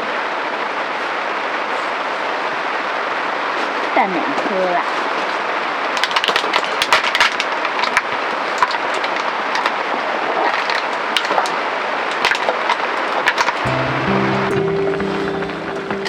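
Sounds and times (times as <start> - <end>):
sharp pops and crackles: 5.9 - 13.7.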